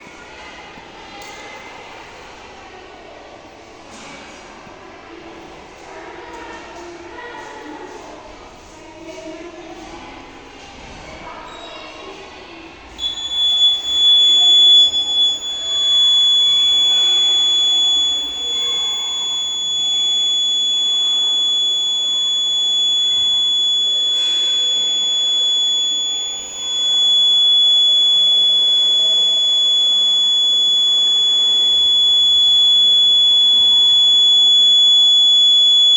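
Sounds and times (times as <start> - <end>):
high-pitched fire alarm tone: 13.0 - 35.9.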